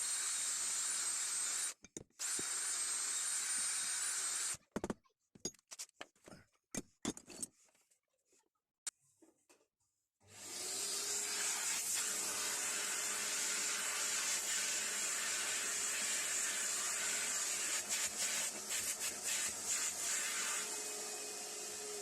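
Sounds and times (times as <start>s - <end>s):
high-speed power tool running: 10.3s - 22.0s.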